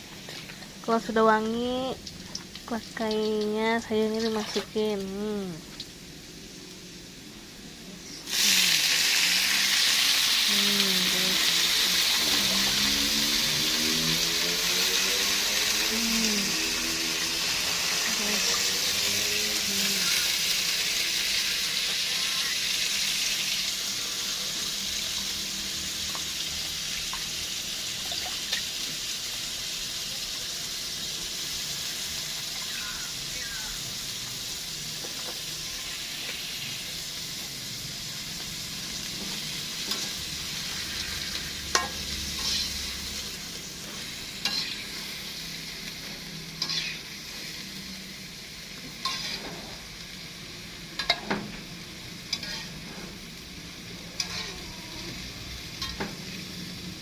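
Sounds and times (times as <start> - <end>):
greens sizzling in hot oil: 0.0 - 57.0.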